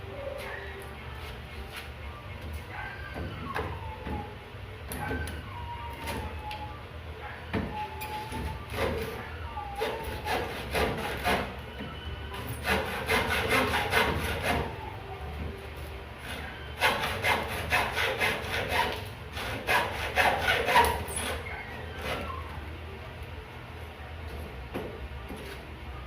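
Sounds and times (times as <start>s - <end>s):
handsaw cutting wood: 9.8s - 11.5s, 12.6s - 14.7s, 16.2s - 21.4s.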